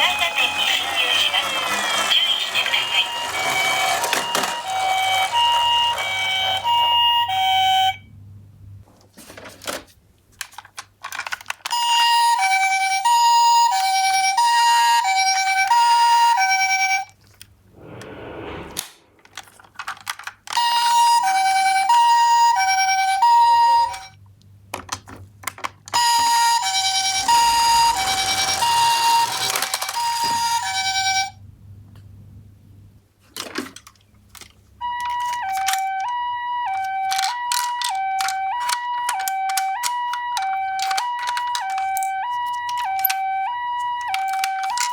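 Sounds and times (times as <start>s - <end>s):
toy two-tone siren: 0.0s - 8.1s, 11.6s - 17.1s, 20.5s - 24.2s, 26.0s - 31.4s, 34.8s - 44.9s
short rushing noise: 17.7s - 19.2s.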